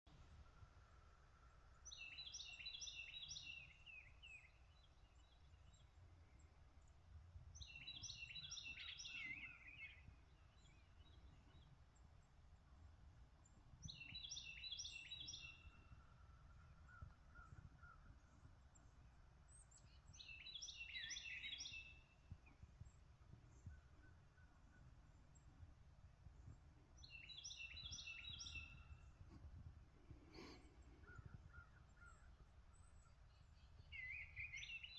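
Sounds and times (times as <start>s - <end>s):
songbird singing: 0.2s - 12.7s, 13.3s - 34.9s
faint bird calling: 30.1s - 32.4s.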